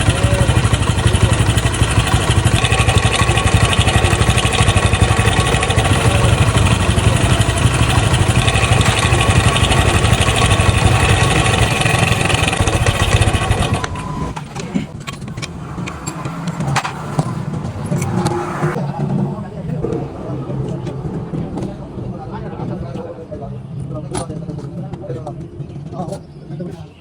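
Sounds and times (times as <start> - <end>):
motorcycle engine idling: 0.0 - 16.0
fast metallic clatter: 0.0 - 18.8.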